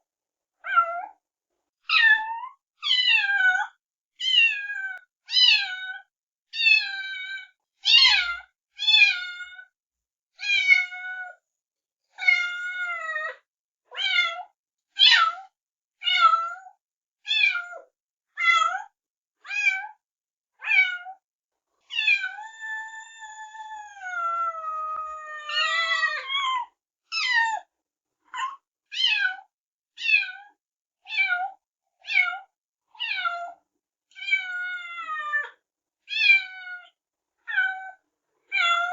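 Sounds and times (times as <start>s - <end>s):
kittens meowing: 21.9s - 27.6s.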